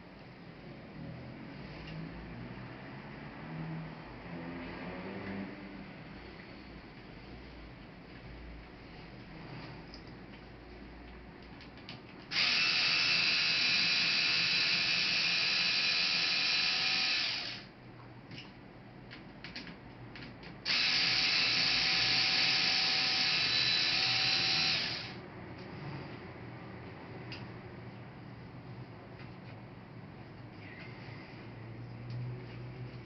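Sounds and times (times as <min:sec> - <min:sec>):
electric screwdriver running: 0:12.3 - 0:17.7, 0:20.7 - 0:25.2.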